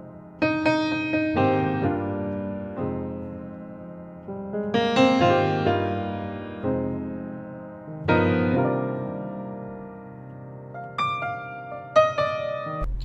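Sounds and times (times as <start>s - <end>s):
slow piano chords: 0.0s - 13.0s.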